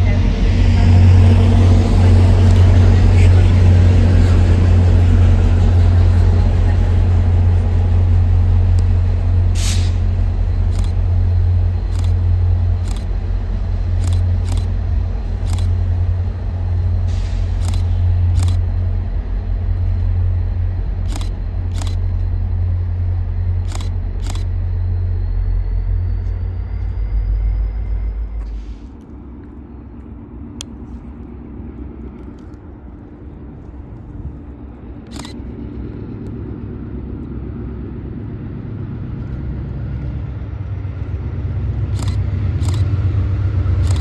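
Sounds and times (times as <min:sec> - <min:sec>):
train rumbling by: 0:00.0 - 0:44.0
faint high whine: 0:05.8 - 0:29.2
wheels clicking over rail joints: 0:41.9 - 0:44.0.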